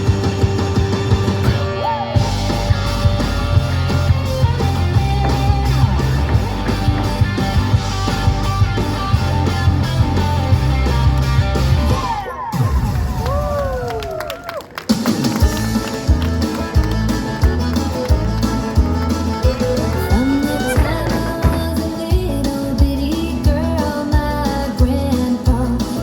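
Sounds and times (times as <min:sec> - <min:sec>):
bass: 0:00.0 - 0:26.0
steady drum beat: 0:02.3 - 0:11.8, 0:15.4 - 0:25.8
twangy guitar with bent notes: 0:02.4 - 0:11.8, 0:17.5 - 0:23.8.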